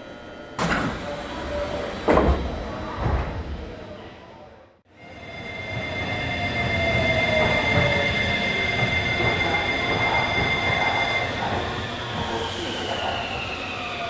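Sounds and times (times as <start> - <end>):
wheel and rail noise: 5.3 - 14.0
train motors whining: 5.4 - 14.0.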